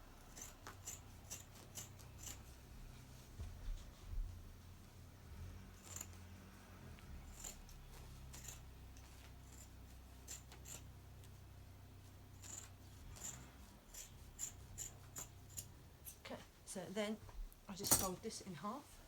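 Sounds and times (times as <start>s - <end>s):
scissors snipping through fabric: 0.3s - 2.5s, 5.8s - 6.2s, 7.1s - 9.7s, 10.3s - 10.8s, 12.4s - 15.7s.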